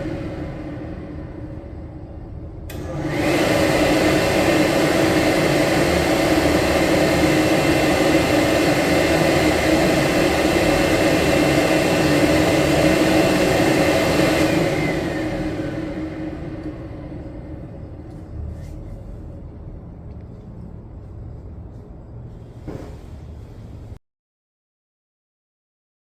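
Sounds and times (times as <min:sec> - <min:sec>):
electric hand dryer blowing: 0:00.0 - 0:18.8
motor whine: 0:00.0 - 0:22.4.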